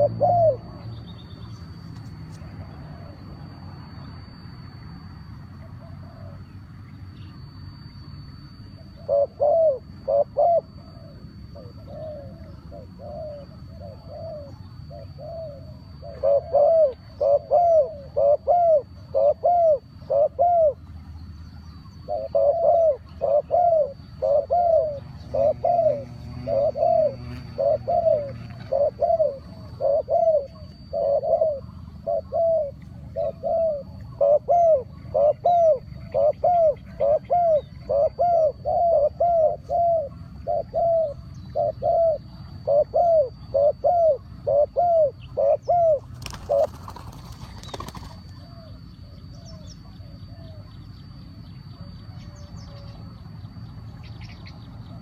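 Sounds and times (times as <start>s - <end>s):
faint steady high tone: 0.0s - 45.8s, 47.8s - 55.0s
bird calling repeated notes: 22.0s - 49.8s.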